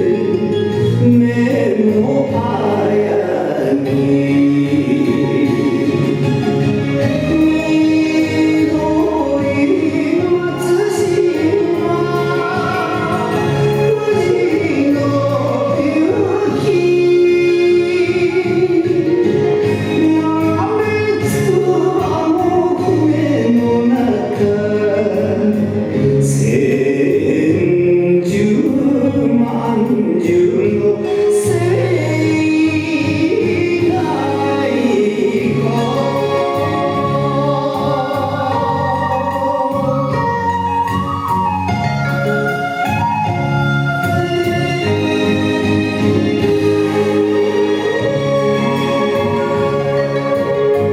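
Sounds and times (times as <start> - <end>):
song with singing and instruments: 0.0 - 50.9.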